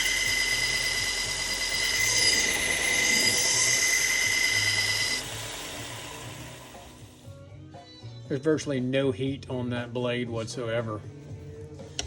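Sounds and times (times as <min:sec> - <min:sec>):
belt grinder whining on steel: 0:00.0 - 0:07.3.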